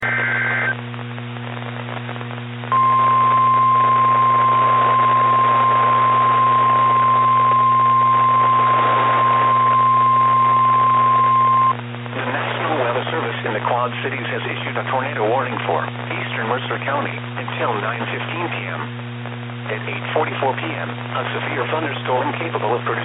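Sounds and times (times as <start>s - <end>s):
low hum: 0.0s - 13.7s
receiver hiss: 0.0s - 23.0s.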